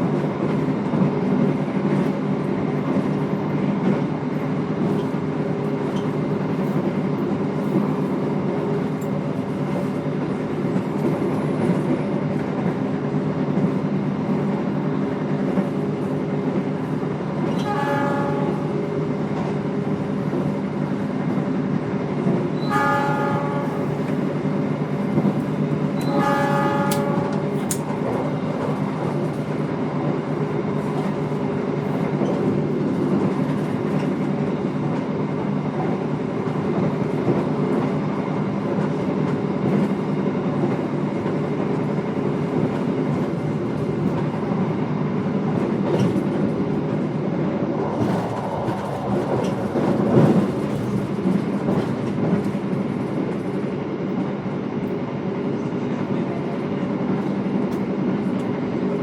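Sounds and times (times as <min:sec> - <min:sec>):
train rumbling: 0:00.0 - 0:59.0
train horn blasts: 0:17.5 - 0:18.9, 0:22.6 - 0:24.1, 0:26.0 - 0:27.8.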